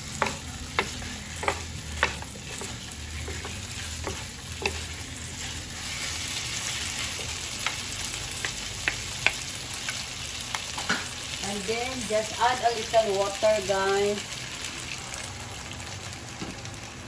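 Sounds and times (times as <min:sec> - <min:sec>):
chicken sizzling in hot oil: 0:00.0 - 0:17.0
utensil knocking against pan: 0:00.2 - 0:04.8.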